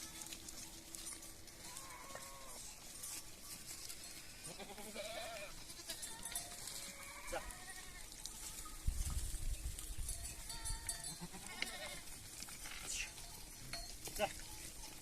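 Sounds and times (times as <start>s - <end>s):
goats bleating: 1.6s - 2.7s, 4.4s - 8.7s, 10.5s - 12.1s.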